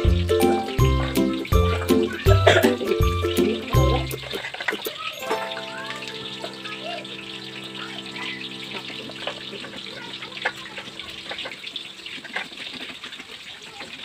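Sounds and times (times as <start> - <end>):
water running and splashing: 0.0 - 14.0
soft background music chord: 5.2 - 11.5.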